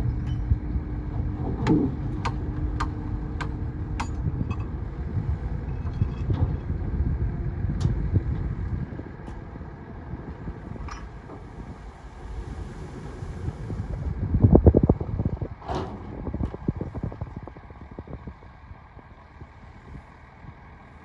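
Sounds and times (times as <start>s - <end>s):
heavy diesel machinery running: 0.0s - 21.0s.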